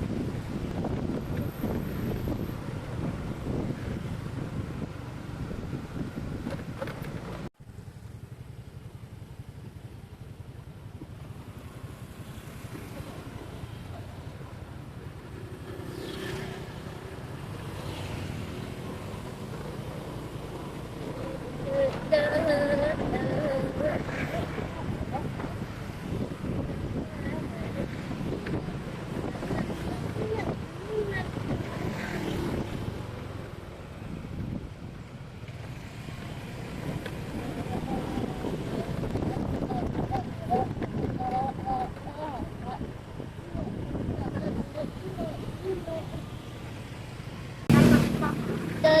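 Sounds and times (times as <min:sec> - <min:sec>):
wind on microphone: 0:00.0 - 0:07.5, 0:21.5 - 0:33.2, 0:36.7 - 0:46.3
engine rumble: 0:00.0 - 0:49.0
vehicles passing: 0:00.0 - 0:49.0.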